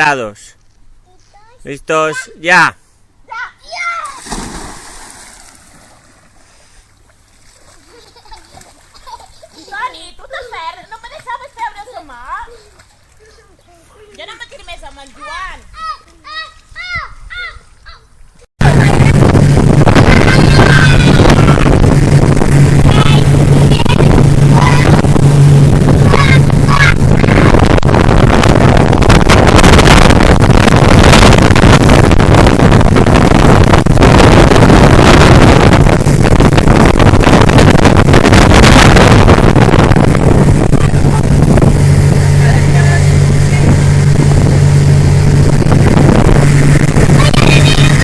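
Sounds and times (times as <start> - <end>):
water rushing: 4.0 - 13.6, 18.6 - 48.0
wind rushing: 4.2 - 5.8, 18.6 - 48.0
motorboat engine humming: 18.1 - 48.0.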